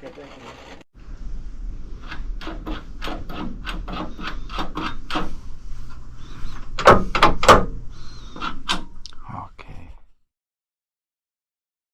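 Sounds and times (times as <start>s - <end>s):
loud sharp knocks: 6.8s - 7.8s.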